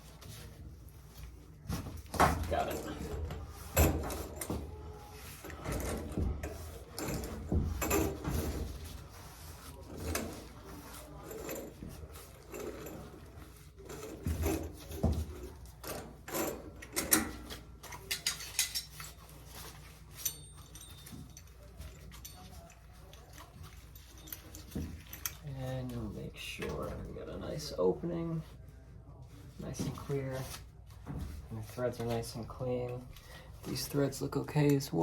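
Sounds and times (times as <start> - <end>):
metal clinks knocks and scrapes: 1.2 - 27.0.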